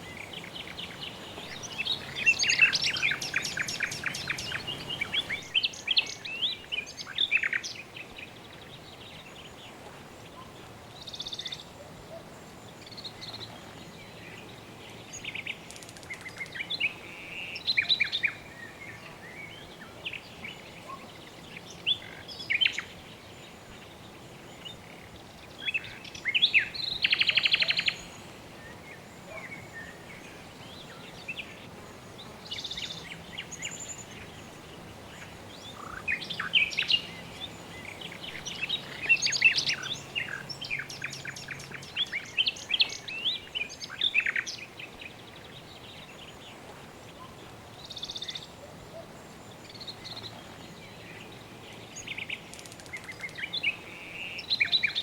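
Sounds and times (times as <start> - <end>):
birds chirping and calling: 0.0 - 6.2
soft background hiss: 0.0 - 55.0.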